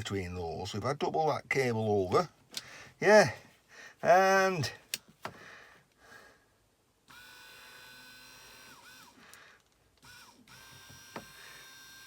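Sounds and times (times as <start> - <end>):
electric motor whine: 7.1 - 9.2, 10.0 - 12.0.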